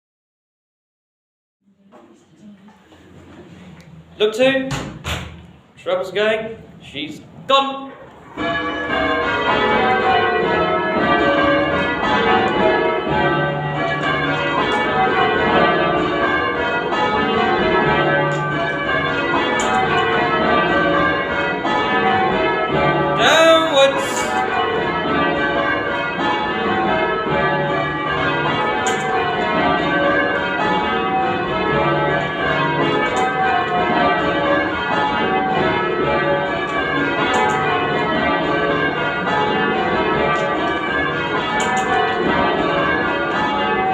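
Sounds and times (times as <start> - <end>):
church bells ringing: 6.0 - 43.9.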